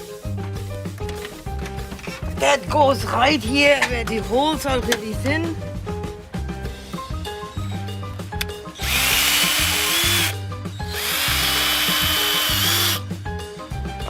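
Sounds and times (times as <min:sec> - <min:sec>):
background music: 0:00.0 - 0:14.0
power drill whining: 0:08.8 - 0:13.1.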